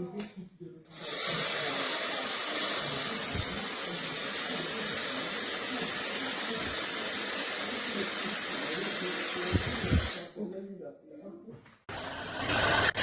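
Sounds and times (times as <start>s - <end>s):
hair dryer blowing air: 1.0s - 10.3s
thin high whine: 2.6s - 10.3s.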